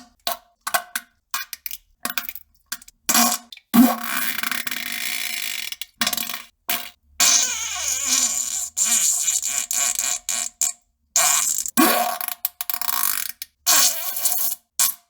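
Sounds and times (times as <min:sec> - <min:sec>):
loud fart sounds: 0:07.2 - 0:11.9.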